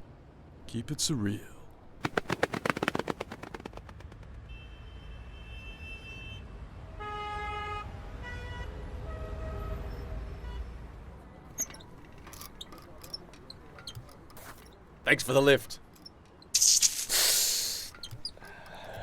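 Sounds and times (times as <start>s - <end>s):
traffic rumble: 11.2s - 16.6s, 17.3s - 19.0s.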